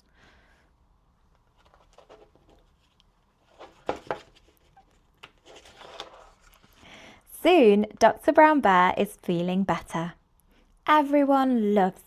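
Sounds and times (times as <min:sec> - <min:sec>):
paper page rustling: 0:01.4 - 0:06.8.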